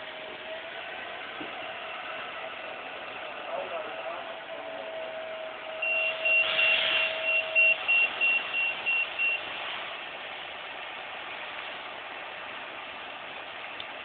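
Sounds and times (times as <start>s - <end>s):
high electronic beeps: 5.8s - 9.4s.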